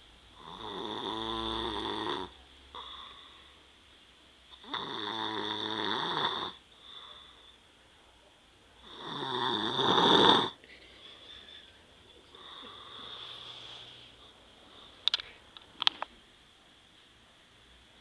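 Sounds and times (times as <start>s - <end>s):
man snoring: 0.4s - 2.9s, 4.6s - 6.6s, 8.8s - 10.6s
faint breaths: 2.7s - 3.8s, 6.5s - 8.1s, 10.5s - 15.6s.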